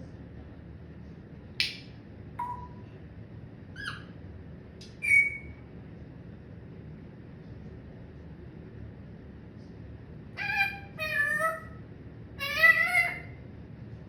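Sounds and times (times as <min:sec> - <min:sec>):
parrot squawking: 0:02.4 - 0:02.8, 0:03.8 - 0:04.1, 0:05.0 - 0:05.6, 0:10.4 - 0:11.8, 0:12.4 - 0:13.4
parrot whistling: 0:02.4 - 0:02.8, 0:03.8 - 0:04.1, 0:04.9 - 0:05.6, 0:10.4 - 0:11.7.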